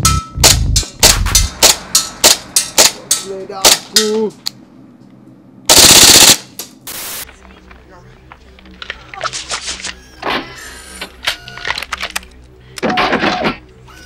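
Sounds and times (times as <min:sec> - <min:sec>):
full-auto gunfire burst: 0:05.7 - 0:06.5.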